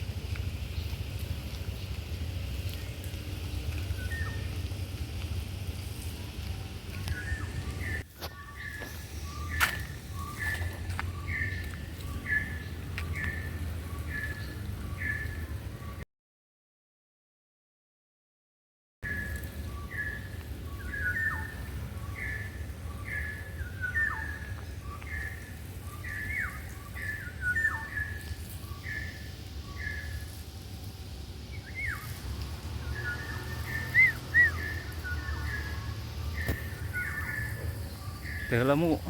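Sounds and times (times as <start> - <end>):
birds whistling: 3.8 - 4.6, 7.0 - 16.0, 19.1 - 30.4, 31.5 - 39.0.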